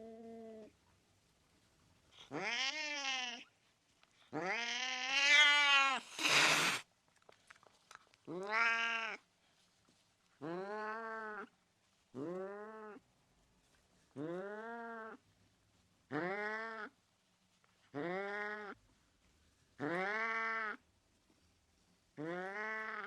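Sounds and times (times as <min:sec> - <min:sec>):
cat yowling meows: 0:04.4 - 0:06.8
cat hissing: 0:05.2 - 0:06.8.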